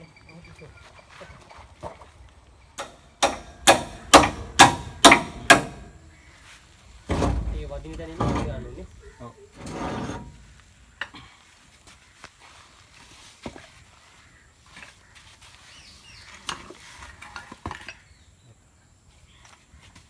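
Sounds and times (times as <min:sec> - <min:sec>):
metal tools clinking: 0:02.8 - 0:06.0.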